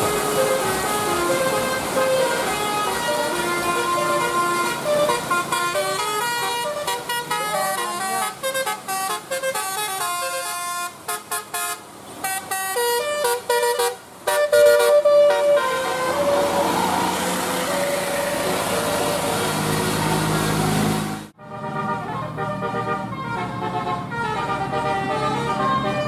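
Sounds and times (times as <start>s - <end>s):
steady rushing noise: 0.0s - 6.9s
multi-tone air horn melody: 0.0s - 26.0s.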